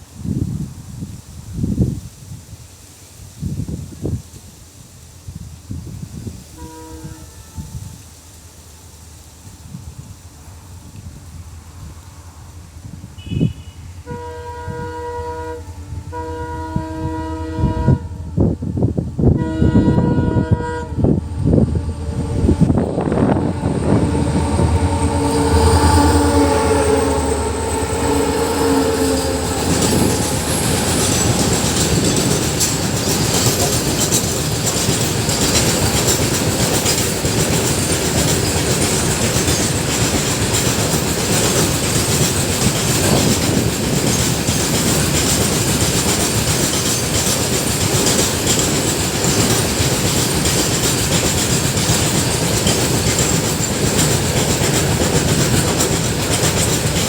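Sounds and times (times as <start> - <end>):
freight train wagons rumbling past: 2.0 - 57.0
train horn: 6.5 - 8.2, 13.1 - 31.7
wheels clicking over rail joints: 20.2 - 57.0.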